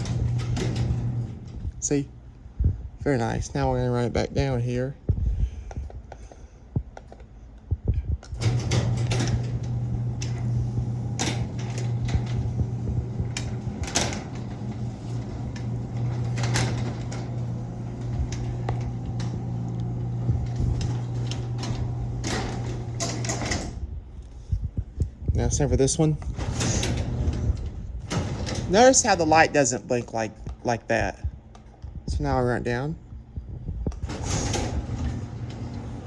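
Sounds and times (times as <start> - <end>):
garage door opener motor humming: 0.0 - 2.3, 8.3 - 24.1, 26.1 - 29.9, 33.9 - 36.0.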